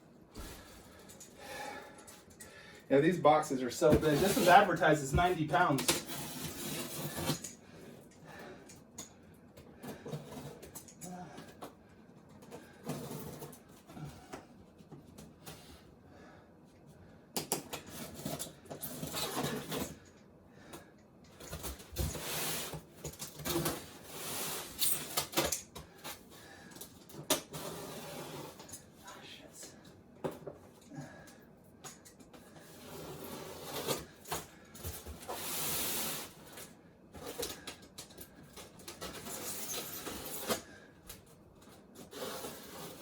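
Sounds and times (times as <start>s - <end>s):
cardboard rustling and scraping: 3.8s - 7.4s.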